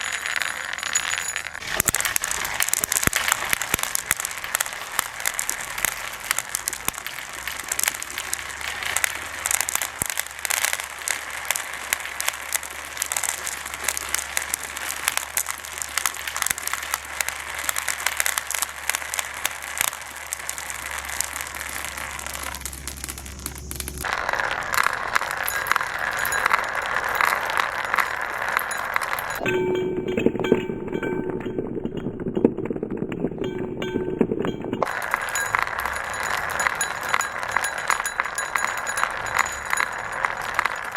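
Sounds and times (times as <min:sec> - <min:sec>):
marbles clattering down a marble run: 0:00.0 - 0:40.9.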